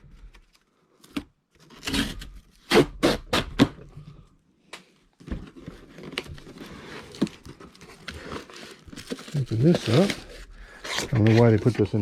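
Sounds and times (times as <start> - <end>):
cardboard box tear strip ripping: 1.6 - 3.8
cardboard scraping and rustling: 5.2 - 12.0.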